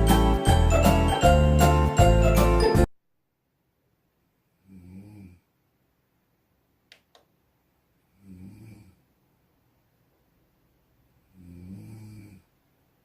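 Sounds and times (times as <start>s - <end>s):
person snoring: 4.6s - 5.5s, 8.1s - 9.0s, 11.3s - 12.5s.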